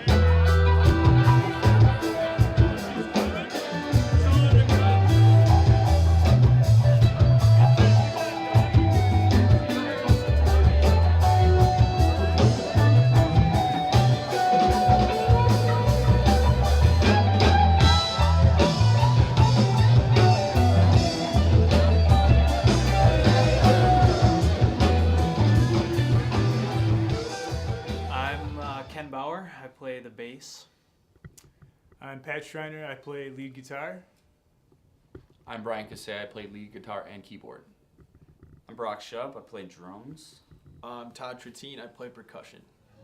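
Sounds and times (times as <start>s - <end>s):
electric guitar: 0.0s - 28.9s
drum beat: 0.0s - 29.0s
driving bass line: 0.0s - 29.1s.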